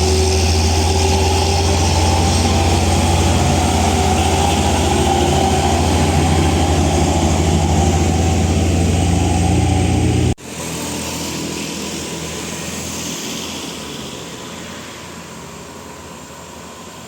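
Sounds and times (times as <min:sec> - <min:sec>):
diesel engine running: 0:00.0 - 0:13.3.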